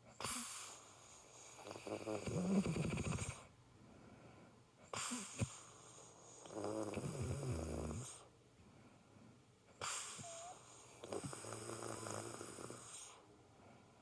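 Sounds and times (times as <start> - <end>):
woman snoring: 1.6 - 3.4, 6.4 - 8.1, 10.2 - 13.0.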